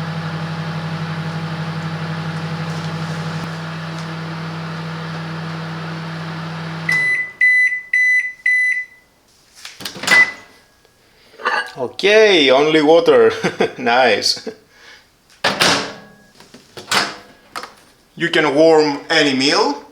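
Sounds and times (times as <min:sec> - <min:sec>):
microwave oven humming: 0:00.0 - 0:07.9.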